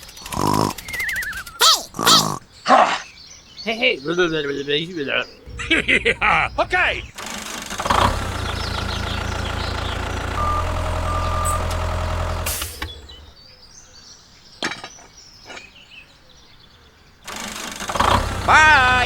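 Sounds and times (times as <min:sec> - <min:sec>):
engine running: 0:05.4 - 0:13.4, 0:17.7 - 0:19.0.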